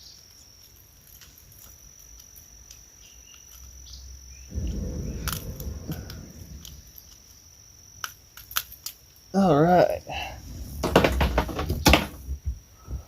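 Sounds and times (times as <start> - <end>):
high insect drone: 0.0 - 13.0
low rumbling noise: 4.3 - 7.6, 10.1 - 12.1.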